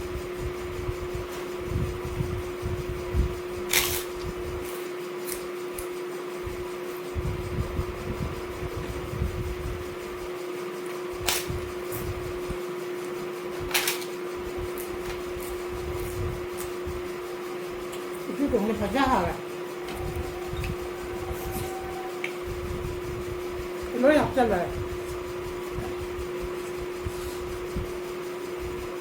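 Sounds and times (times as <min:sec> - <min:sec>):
electric fan hum: 0:00.0 - 0:29.0.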